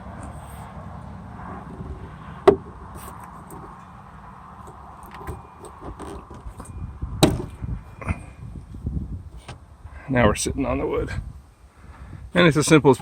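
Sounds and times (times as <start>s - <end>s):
gate knocking onto wood block: 2.4s - 2.8s.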